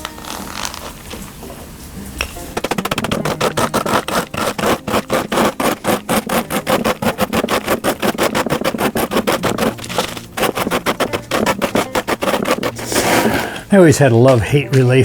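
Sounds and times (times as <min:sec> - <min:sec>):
rolling pin crushing cereal in bag: 0:02.4 - 0:13.6.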